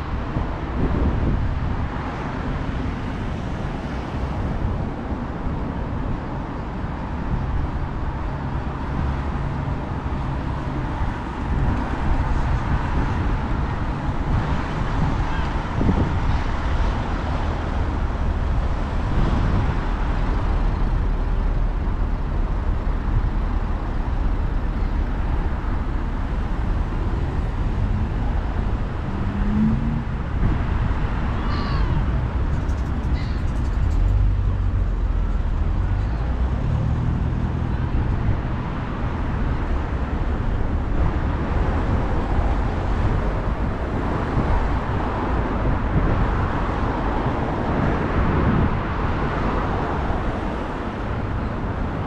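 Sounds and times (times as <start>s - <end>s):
road traffic passing: 0.0s - 52.0s
wind rumbling on microphone: 0.0s - 52.0s.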